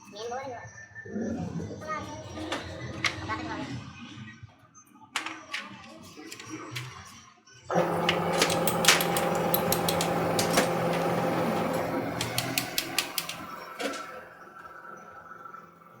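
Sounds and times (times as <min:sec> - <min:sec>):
small motor humming: 0:07.7 - 0:16.0
sharp metallic clicks: 0:08.0 - 0:14.1.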